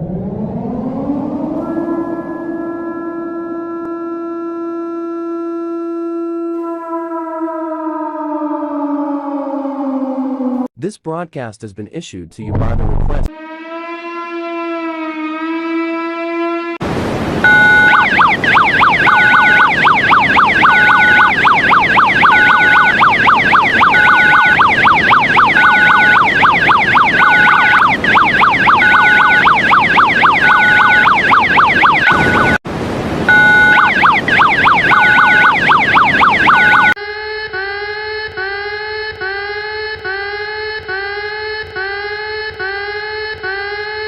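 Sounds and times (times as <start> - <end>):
alarm with rising notes: 0.0 - 10.7, 12.6 - 16.8, 17.4 - 32.6, 33.3 - 44.0
two-tone signal: 1.5 - 7.3, 17.4 - 32.6, 33.3 - 37.0
held alert tone: 1.6 - 3.9, 17.5 - 21.3, 33.3 - 36.9
electronic alarm yelping: 17.5 - 32.6, 33.3 - 37.0.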